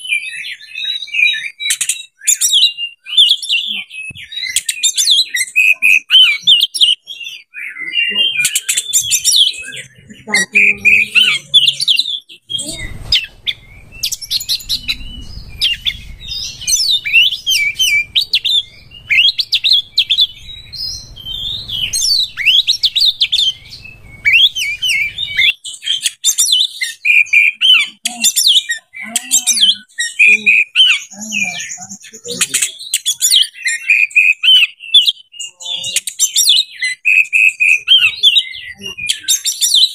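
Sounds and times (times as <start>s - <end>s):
bird singing varied song: 0.0s - 39.9s
faint low rumble: 12.5s - 25.4s.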